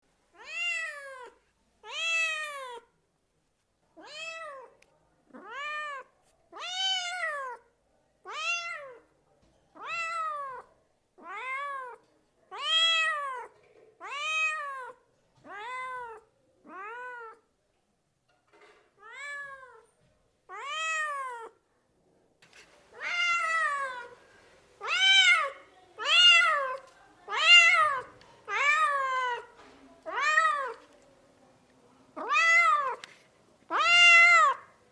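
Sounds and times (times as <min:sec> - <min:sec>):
cat meowing: 0:00.4 - 0:02.9, 0:04.0 - 0:04.7, 0:05.3 - 0:07.6, 0:08.3 - 0:09.0, 0:09.8 - 0:17.4, 0:19.0 - 0:19.9, 0:20.5 - 0:21.6, 0:23.0 - 0:24.2, 0:24.8 - 0:29.5, 0:30.1 - 0:30.8, 0:32.2 - 0:33.0, 0:33.7 - 0:34.7.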